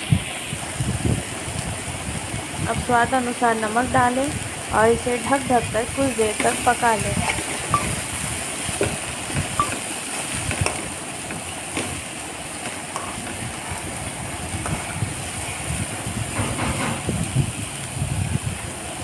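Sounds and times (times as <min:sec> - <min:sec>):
vegetables sizzling in a pan: 0:00.0 - 0:19.0
spoon scraping a pan: 0:06.2 - 0:08.0, 0:08.7 - 0:11.0, 0:12.6 - 0:13.8.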